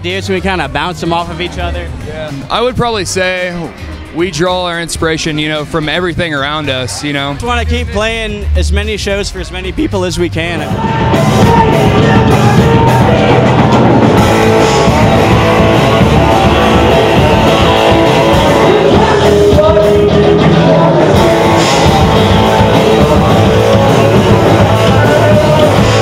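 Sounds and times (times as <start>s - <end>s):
drum kit: 0.0s - 26.0s
rock band playing: 0.0s - 26.0s
electric guitar: 10.7s - 26.0s
person singing: 10.7s - 26.0s.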